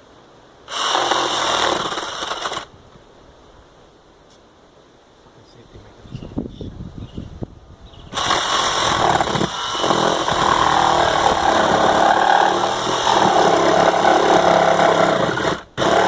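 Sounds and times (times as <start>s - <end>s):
power tool motor running: 8.2s - 16.0s.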